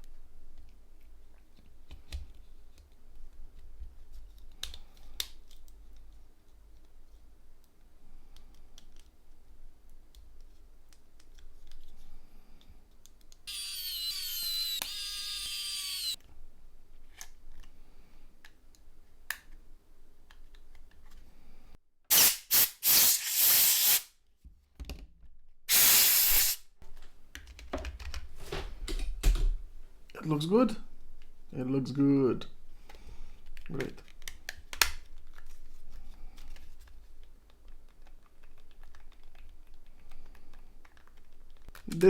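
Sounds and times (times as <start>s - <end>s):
hissing blasts of air: 22.1s - 24.1s, 25.7s - 26.6s.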